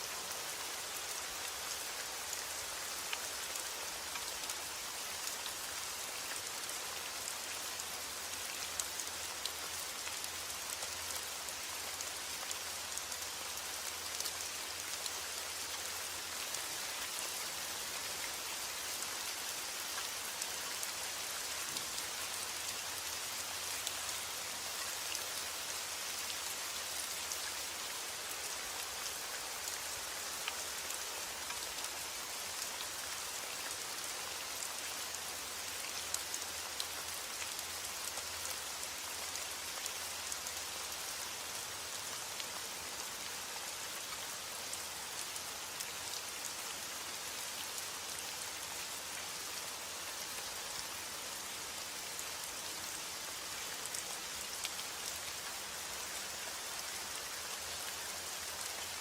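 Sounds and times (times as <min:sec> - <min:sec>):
heavy rain falling: 0:53.4 - 0:59.0.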